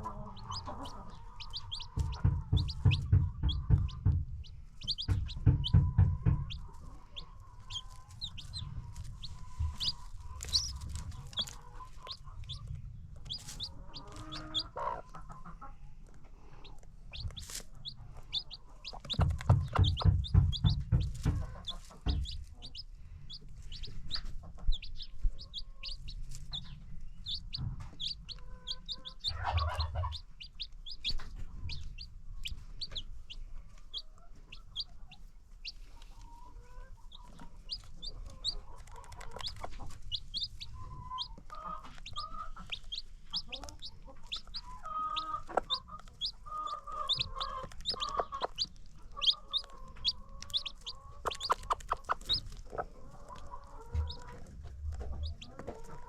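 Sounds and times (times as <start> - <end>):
baby chicks peeping: 0.0 - 56.0
hens clucking: 0.0 - 56.0.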